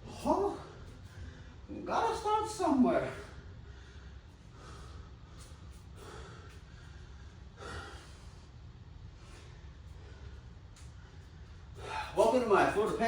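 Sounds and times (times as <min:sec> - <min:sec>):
low steady hum: 0:00.0 - 0:13.0
man breathing hard: 0:00.6 - 0:01.7, 0:03.3 - 0:12.2.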